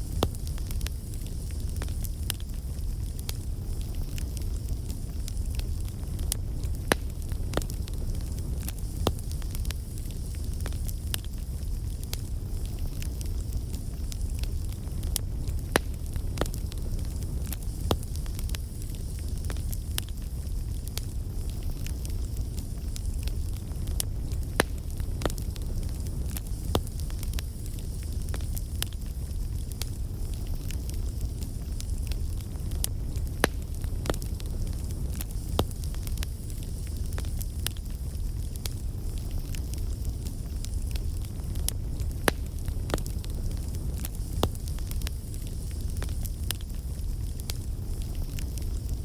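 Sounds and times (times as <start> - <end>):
burning wood crackling and popping: 0.0 - 49.0
low rumble of flames: 0.0 - 49.0.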